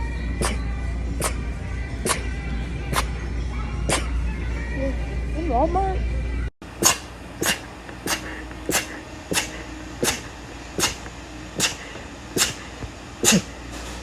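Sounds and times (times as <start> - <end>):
woman sneezing: 3.9 - 4.1, 6.8 - 11.0, 13.2 - 13.6.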